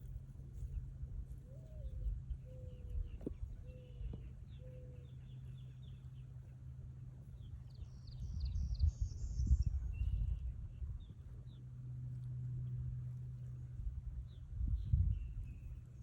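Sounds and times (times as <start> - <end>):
steady low hum: 0.0 - 16.0
small birds chirping: 1.4 - 6.6, 7.2 - 11.6
low rumble: 8.0 - 16.0.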